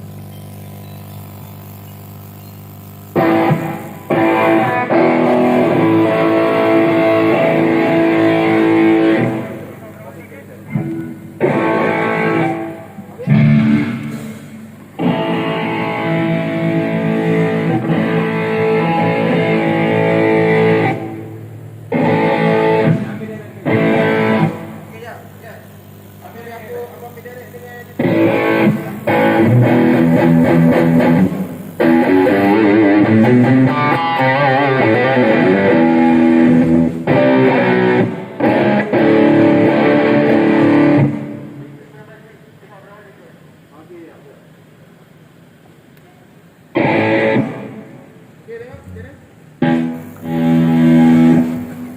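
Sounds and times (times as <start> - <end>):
strummed guitar chords: 3.1 - 24.9, 28.0 - 41.8, 46.7 - 48.2, 49.6 - 51.9.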